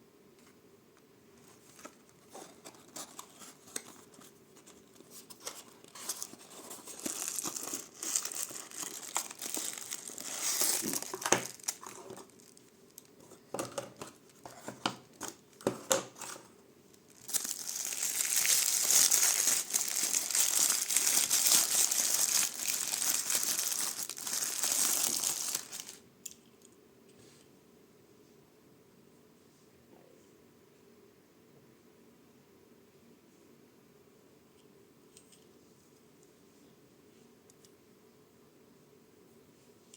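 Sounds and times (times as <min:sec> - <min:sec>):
plastic packaging crinkling and tearing: 0:01.7 - 0:16.4, 0:17.0 - 0:26.0.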